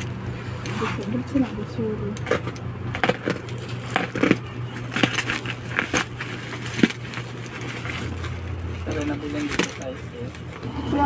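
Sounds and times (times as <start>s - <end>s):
packaging crinkling: 2.2s - 10.6s.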